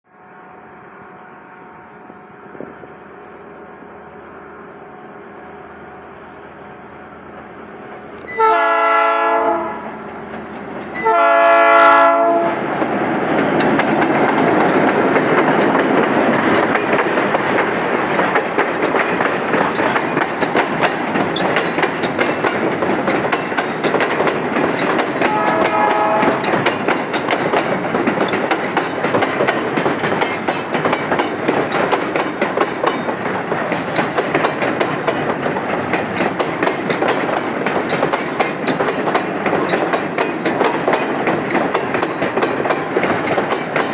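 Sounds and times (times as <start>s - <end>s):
train rumble: 0.1s - 43.9s
locomotive horn: 8.2s - 10.0s, 11.0s - 12.6s, 25.2s - 26.6s
wheels clattering over rail joints: 12.8s - 43.9s.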